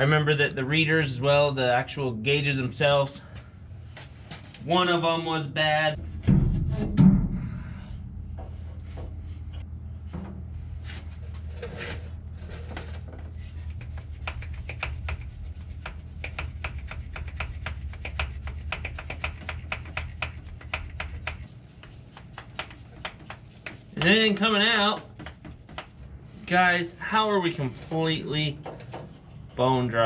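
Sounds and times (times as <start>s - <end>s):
low steady hum: 0.0s - 30.0s.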